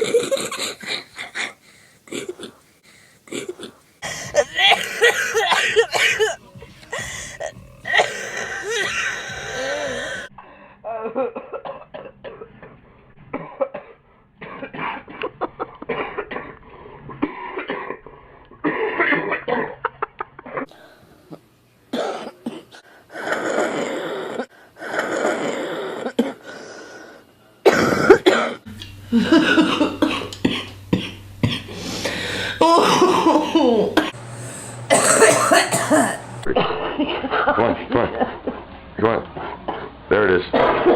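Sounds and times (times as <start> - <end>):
people coughing: 0.0 - 2.6, 3.3 - 10.3, 21.9 - 22.8, 27.6 - 34.3, 34.9 - 38.6.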